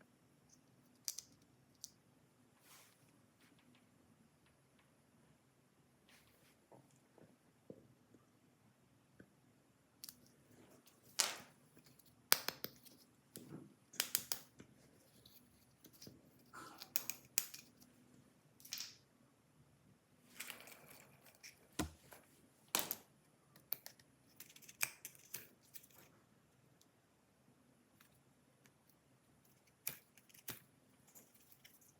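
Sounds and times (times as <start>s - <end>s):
rustling and scraping: 2.6s - 3.9s.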